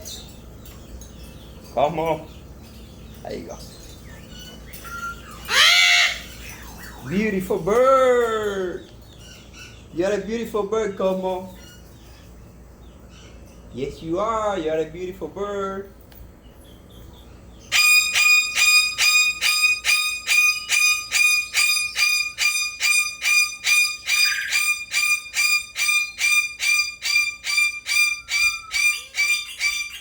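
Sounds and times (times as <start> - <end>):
parrot calling: 1.6 - 13.6, 17.6 - 30.0.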